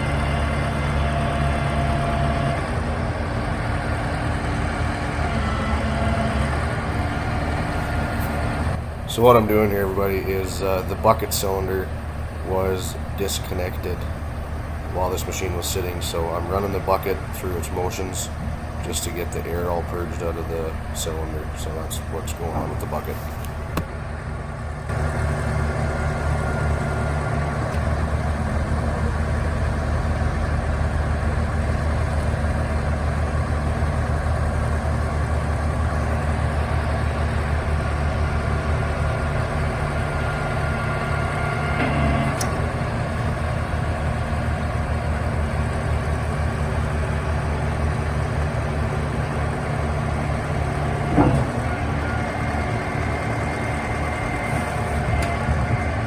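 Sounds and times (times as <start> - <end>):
excavator engine running: 0.0 - 56.0
hydraulics working bucket: 6.4 - 24.0, 36.8 - 56.0.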